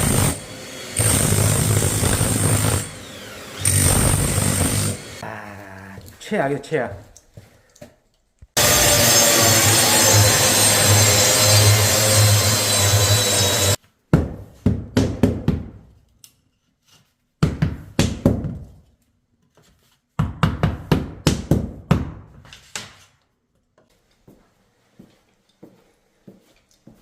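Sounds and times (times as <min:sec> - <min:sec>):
power saw cutting wood: 0:00.0 - 0:05.2, 0:08.6 - 0:13.8.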